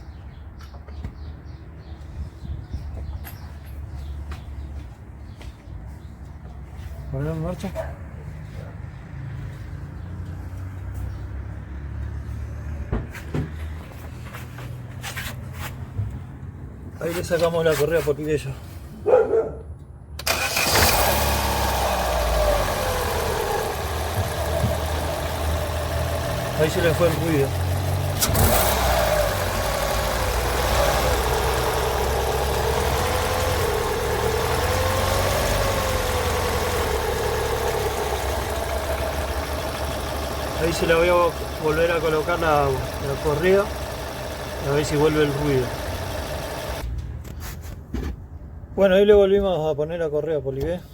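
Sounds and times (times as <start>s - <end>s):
car engine idling: 20.2s - 46.9s
sharp engine clicks: 20.2s - 47.0s.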